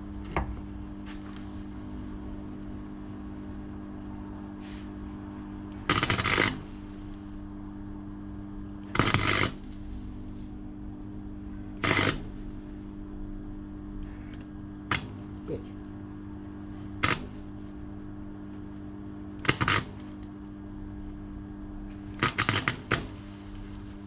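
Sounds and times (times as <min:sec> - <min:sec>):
steady electrical hum: 0:00.0 - 0:24.0
crackling arc welding: 0:04.6 - 0:10.6, 0:11.3 - 0:21.1, 0:21.7 - 0:24.0.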